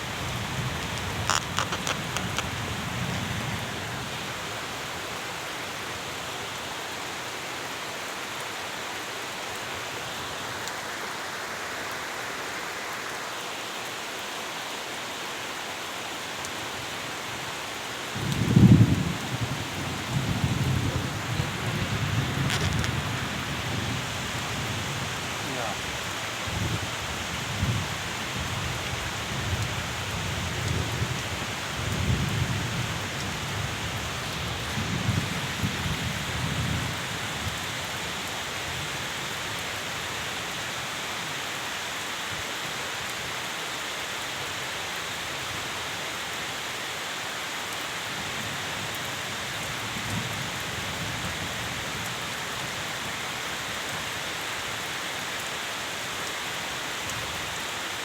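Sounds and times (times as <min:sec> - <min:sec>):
steady rain falling: 0:00.0 - 0:58.0
thunder rumbling: 0:18.2 - 0:25.1.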